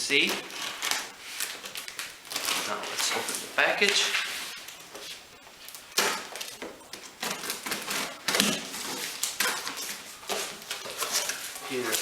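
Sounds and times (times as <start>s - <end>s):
cardboard and tape ripping: 0.0s - 12.0s
knife scraping cardboard: 7.2s - 12.0s.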